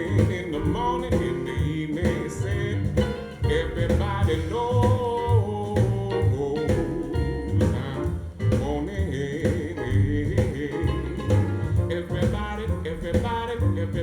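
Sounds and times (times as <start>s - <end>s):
pulsing bass line: 0.0s - 9.1s
blues song over loudspeakers: 0.0s - 14.0s
person singing: 0.0s - 14.0s.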